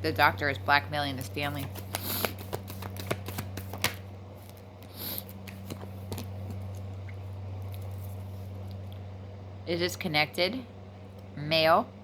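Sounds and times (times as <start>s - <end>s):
cards being shuffled: 1.2s - 6.9s.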